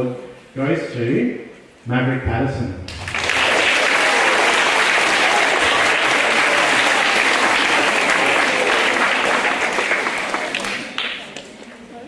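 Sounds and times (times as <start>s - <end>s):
audience applauding: 2.9s - 11.5s.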